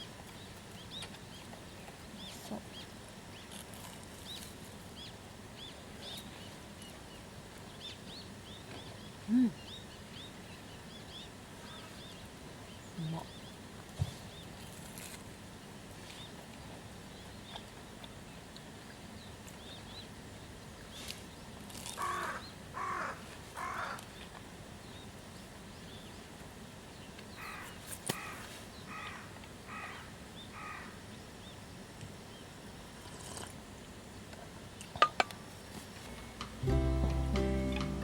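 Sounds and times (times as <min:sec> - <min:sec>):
low outdoor background: 0:00.0 - 0:38.0
crow cawing: 0:22.0 - 0:24.0, 0:27.4 - 0:27.6, 0:28.2 - 0:30.9.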